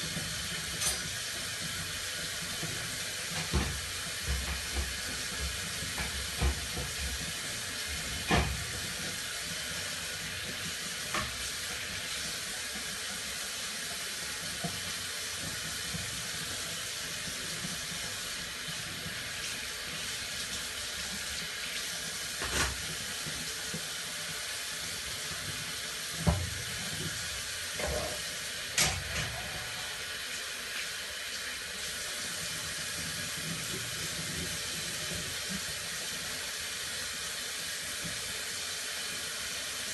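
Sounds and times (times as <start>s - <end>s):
running water: 0.0s - 39.9s
dishes clinking: 0.7s - 1.2s.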